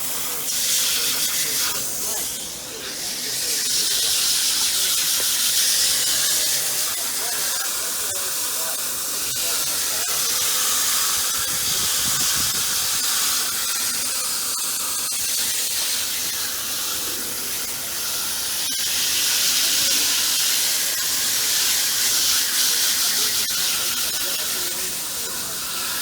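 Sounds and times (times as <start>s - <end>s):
water spray hissing: 0.0s - 26.0s.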